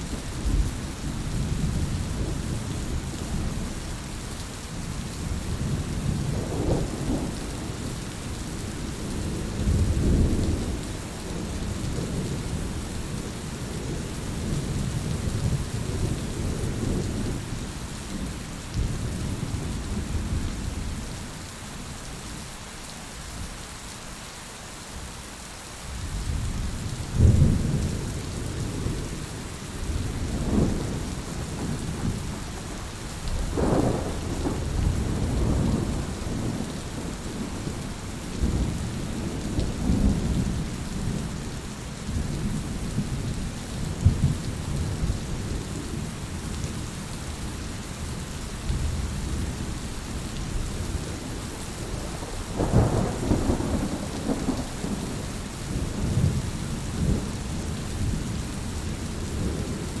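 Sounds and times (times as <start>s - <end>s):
steady rain: 0.0s - 60.0s
rolling thunder: 33.4s - 41.4s, 50.5s - 58.2s.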